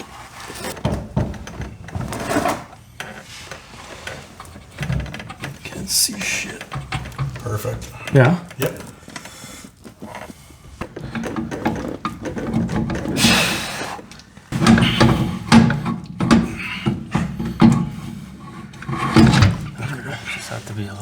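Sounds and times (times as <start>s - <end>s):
metal scraping: 0.0s - 21.0s
hissing scrape: 13.0s - 15.6s.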